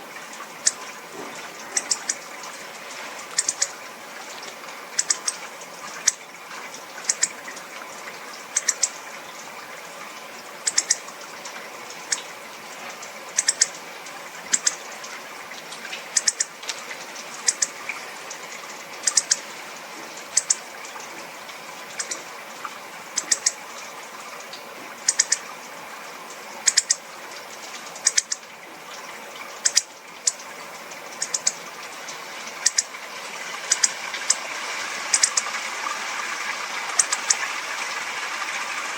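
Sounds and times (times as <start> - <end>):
steady background hiss: 0.0 - 38.9
bird clicking calls: 0.6 - 0.9, 1.6 - 2.6, 3.2 - 3.8, 4.9 - 6.2, 7.0 - 7.6, 8.5 - 9.0, 10.6 - 11.1, 12.0 - 12.3, 13.3 - 13.8, 14.5 - 15.2, 16.1 - 17.8, 19.0 - 19.5, 20.2 - 20.6, 21.9 - 22.2, 23.2 - 23.6, 24.4 - 25.5, 26.6 - 28.5, 29.6 - 31.6, 32.6 - 33.0, 33.6 - 34.4, 35.1 - 35.5, 36.9 - 37.5.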